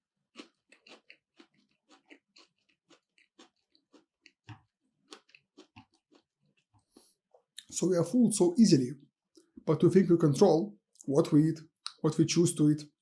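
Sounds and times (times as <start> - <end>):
close-up chewing: 0.2 - 7.6.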